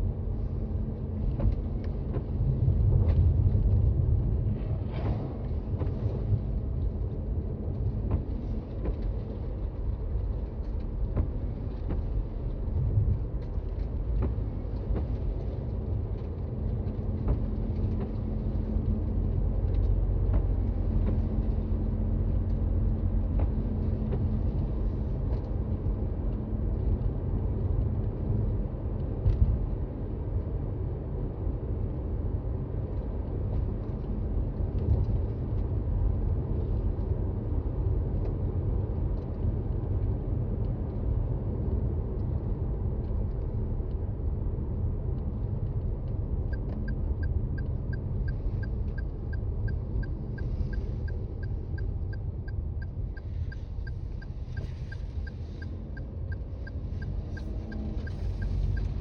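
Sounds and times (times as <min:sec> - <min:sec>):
tyres and drivetrain rumble: 0:00.0 - 0:59.0
turn signal ticking: 0:08.0 - 0:26.0, 0:45.1 - 0:59.0.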